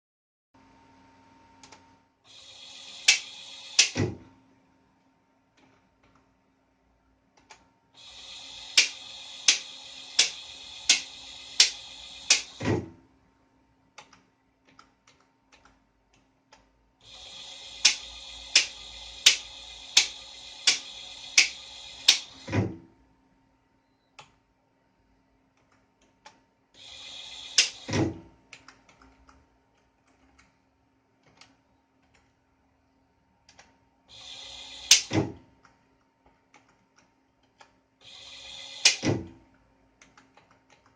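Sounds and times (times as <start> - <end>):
turret motor whirring: 2.3 - 4.2, 8.0 - 12.9, 17.0 - 22.8, 26.8 - 28.3, 34.1 - 35.3, 38.0 - 39.4.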